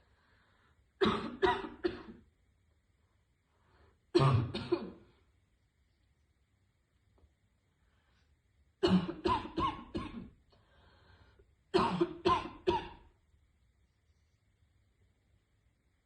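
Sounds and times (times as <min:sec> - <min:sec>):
woman coughing: 0:01.0 - 0:02.2, 0:04.2 - 0:05.0, 0:08.8 - 0:10.3, 0:11.8 - 0:13.1.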